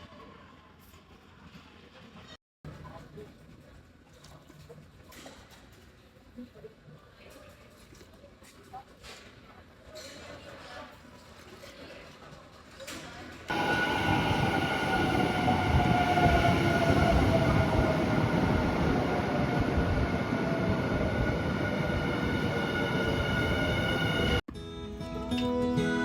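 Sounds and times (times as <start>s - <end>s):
electric train rumble: 13.5s - 24.4s.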